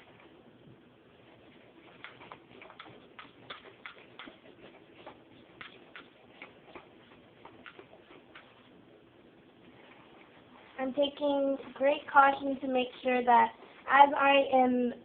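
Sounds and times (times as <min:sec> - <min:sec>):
whisk clicking in a bowl: 0:01.9 - 0:08.7.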